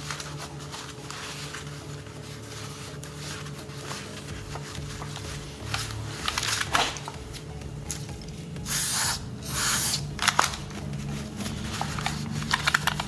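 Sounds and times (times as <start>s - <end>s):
handling clicks and rustles: 0.0s - 8.7s, 10.0s - 13.0s
aerosol spray hissing: 8.6s - 10.2s.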